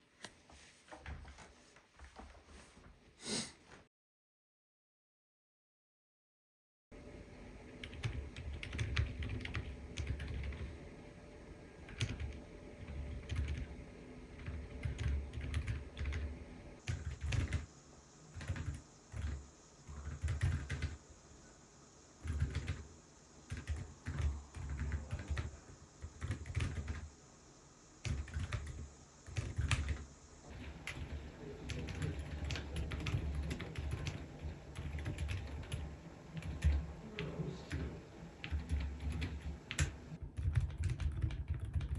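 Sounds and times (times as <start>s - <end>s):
quiet keyboard keystrokes: 7.7s - 10.8s, 11.9s - 13.7s, 14.3s - 17.7s, 18.3s - 21.0s, 22.2s - 22.8s, 23.5s - 27.1s, 28.0s - 41.9s.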